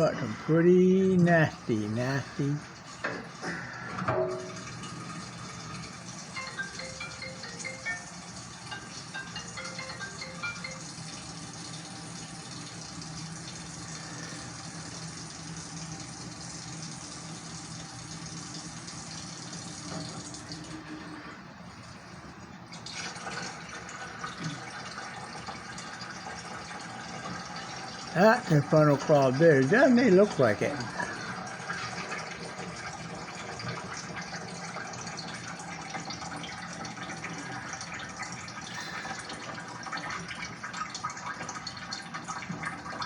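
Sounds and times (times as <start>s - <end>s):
heavy rain hissing: 0.0s - 2.7s, 28.2s - 31.4s
low steady hum: 0.0s - 22.7s.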